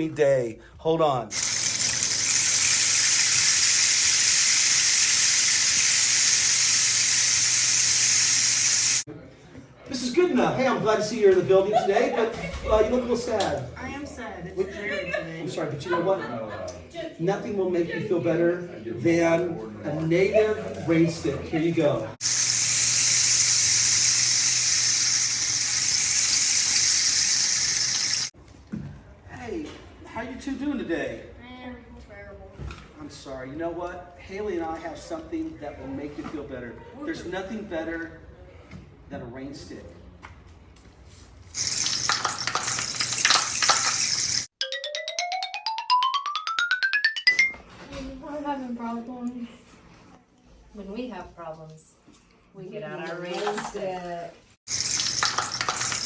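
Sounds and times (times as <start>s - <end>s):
rain stick pebbles cascading: 1.3s - 9.1s, 22.2s - 28.3s, 41.5s - 44.5s, 54.7s - 56.0s.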